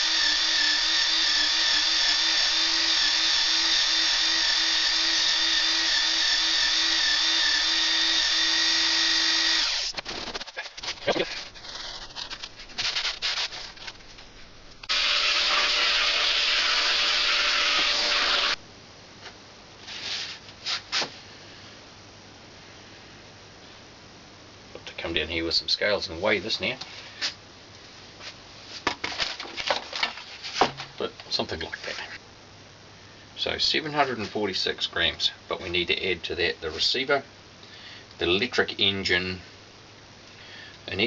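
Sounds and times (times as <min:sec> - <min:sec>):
small electric power tool running: 0:00.0 - 0:10.0, 0:14.9 - 0:18.6.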